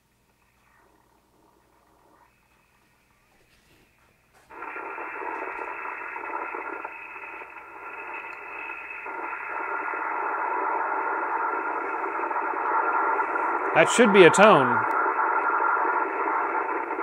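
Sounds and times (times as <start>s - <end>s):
hissy radio hash: 4.5s - 17.0s.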